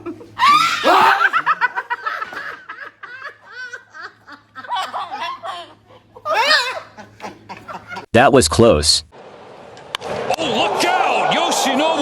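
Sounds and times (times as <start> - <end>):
hearty laughter: 0.0 - 8.1.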